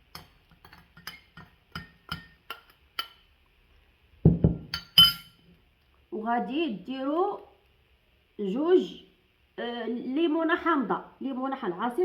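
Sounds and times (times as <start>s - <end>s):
metal spoon clinking on glass: 0.1s - 3.2s, 4.7s - 5.4s
dull knock: 4.2s - 4.7s.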